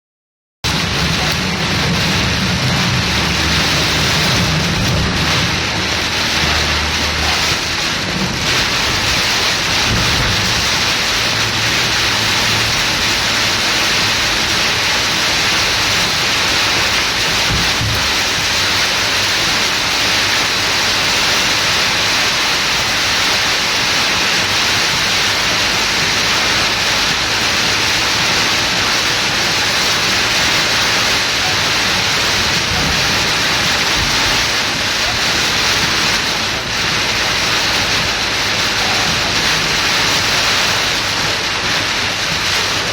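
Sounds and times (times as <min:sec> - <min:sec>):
heavy rain and rushing floodwater: 0:00.6 - 0:42.9
low thumps: 0:08.2 - 0:15.0.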